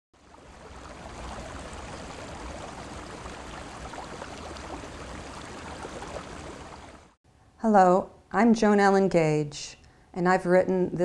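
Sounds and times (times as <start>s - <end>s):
small water splashes: 0.2s - 7.2s
water rushing in a stream: 0.2s - 7.2s.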